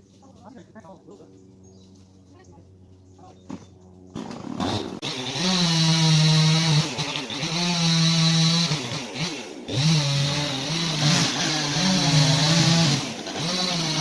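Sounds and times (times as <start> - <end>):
chainsaw revving: 4.2 - 14.0.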